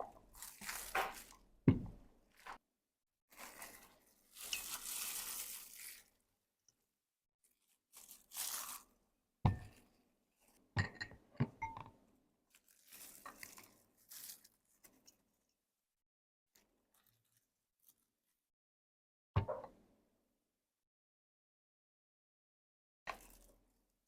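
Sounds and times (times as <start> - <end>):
dry rustling and crunching: 0.3 - 1.4, 3.3 - 6.1, 7.9 - 8.8, 12.5 - 15.0.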